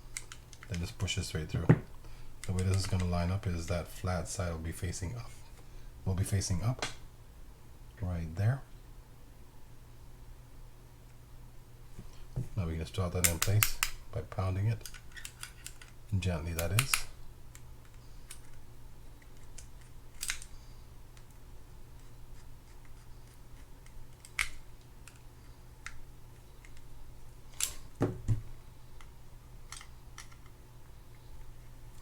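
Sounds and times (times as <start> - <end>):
dull knock: 28.0 - 28.5.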